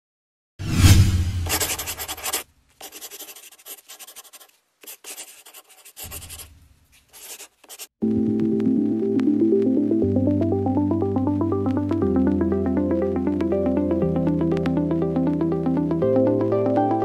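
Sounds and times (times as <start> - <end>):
scratchy rubbing: 1.3 - 7.9
electronic music: 8.0 - 17.0.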